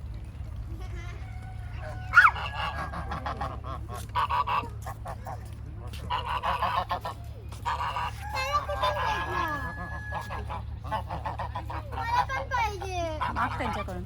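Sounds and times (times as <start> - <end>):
waterfowl honking: 1.7 - 12.4, 13.1 - 14.0.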